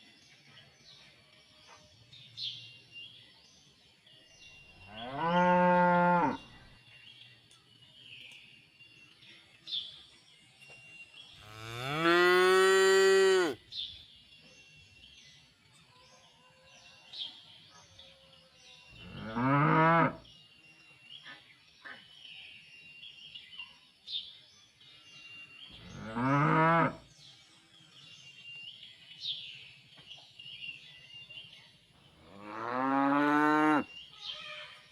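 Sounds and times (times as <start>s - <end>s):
cows mooing: 11.5s - 13.6s, 19.0s - 20.2s, 32.3s - 33.9s.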